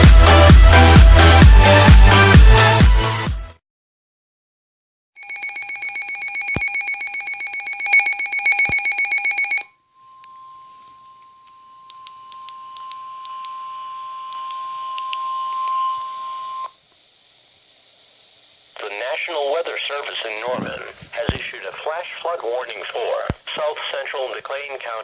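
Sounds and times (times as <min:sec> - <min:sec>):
steady alarm tone: 0:05.2 - 0:16.7
faint radio hiss and crackle: 0:10.1 - 0:25.0.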